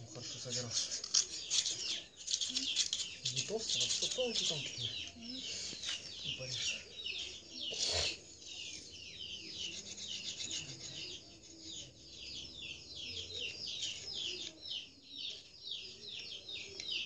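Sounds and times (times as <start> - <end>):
birds chirping: 0.0 - 17.0
knife scraping wooden stick: 0.2 - 4.8, 9.5 - 11.9.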